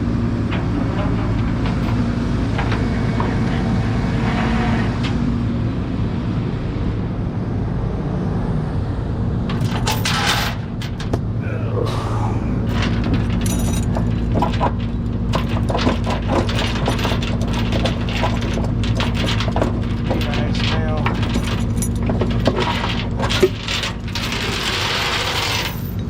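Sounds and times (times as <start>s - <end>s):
vehicle engine humming: 0.0s - 26.0s
clicks and rattles: 0.4s - 5.2s, 9.5s - 11.3s, 12.6s - 26.0s.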